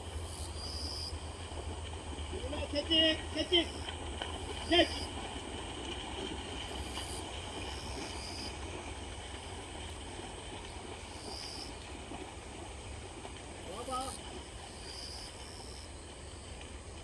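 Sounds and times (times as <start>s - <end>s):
grass insects chirping: 0.1s - 1.2s, 2.4s - 5.2s, 6.5s - 8.6s, 10.7s - 11.8s.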